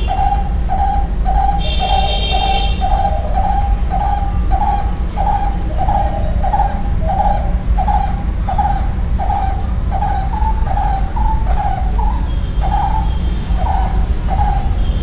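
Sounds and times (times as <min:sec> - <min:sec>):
barbet calling: 0:00.0 - 0:15.0.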